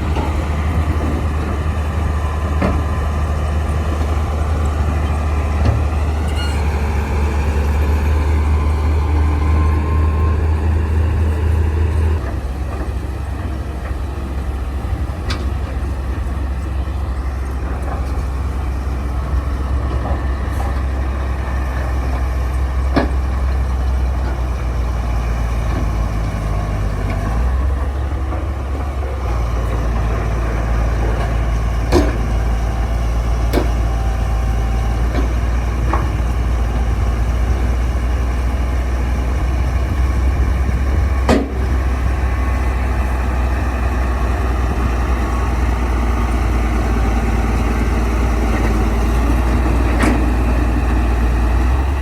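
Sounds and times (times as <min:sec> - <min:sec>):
bulldozer engine running: 0:00.0 - 0:52.0.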